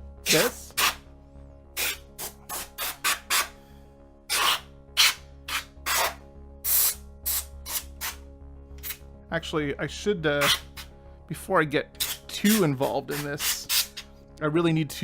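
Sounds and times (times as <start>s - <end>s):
background music: 0.0s - 15.0s
compressed air hissing blasts: 0.3s - 1.0s, 1.8s - 3.6s, 4.3s - 8.2s, 12.0s - 14.1s.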